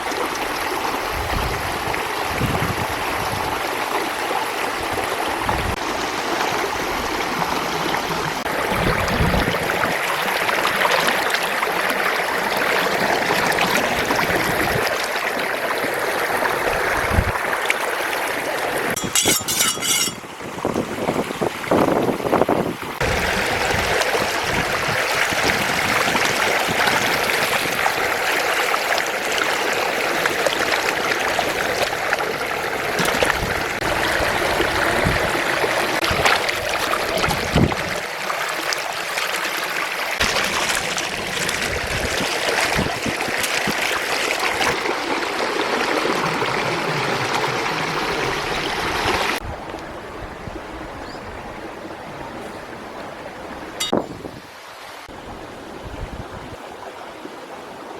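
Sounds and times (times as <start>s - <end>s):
small knocks: 19.0s - 20.3s
water trickling: 39.9s - 44.9s.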